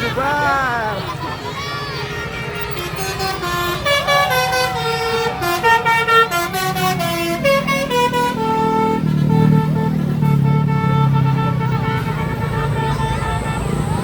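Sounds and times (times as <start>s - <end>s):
multi-tone air horn melody: 2.0s - 14.0s
vehicle engine running: 2.5s - 14.0s.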